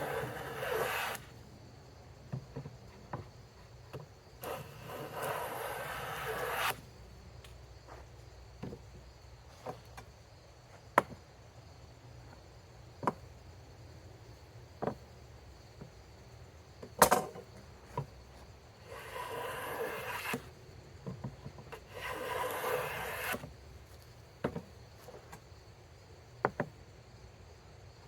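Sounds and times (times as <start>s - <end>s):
hand tool scraping wood: 0.0s - 1.4s, 2.3s - 6.9s, 17.9s - 25.4s.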